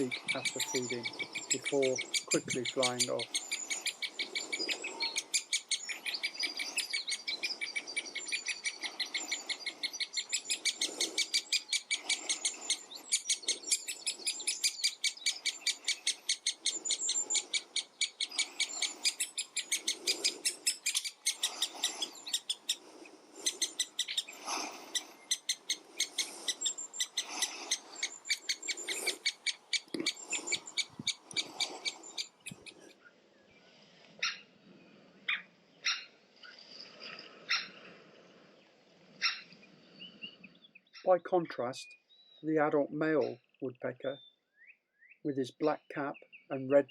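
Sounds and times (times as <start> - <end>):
woodpecker chick begging calls: 0.0 - 32.9.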